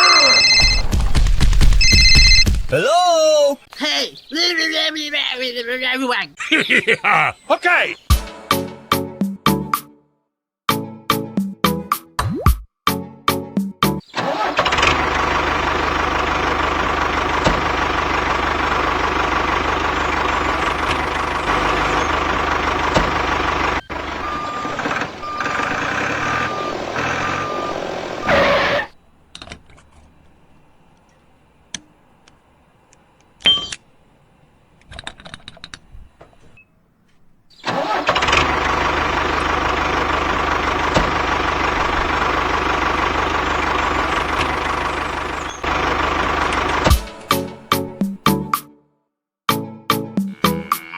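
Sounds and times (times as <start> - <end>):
engine-like running noise with whine: 37.7 - 48.0.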